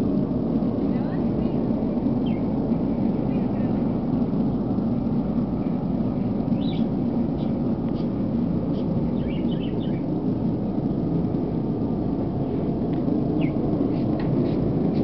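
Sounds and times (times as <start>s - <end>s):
loud low hum: 0.0s - 15.0s
faint bird chirps: 6.5s - 7.6s, 9.1s - 10.1s.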